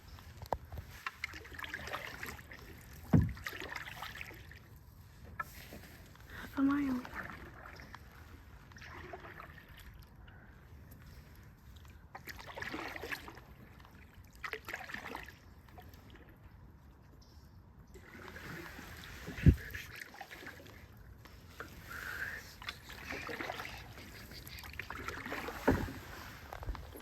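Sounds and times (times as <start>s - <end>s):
canoe paddles splashing: 0.0s - 16.4s, 18.0s - 27.0s
low thump: 3.1s - 3.4s.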